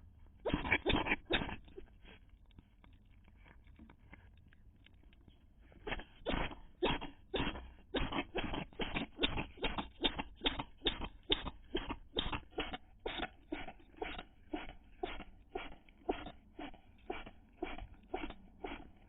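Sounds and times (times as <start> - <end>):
cat sneezing: 0.4 - 1.8, 5.8 - 18.8.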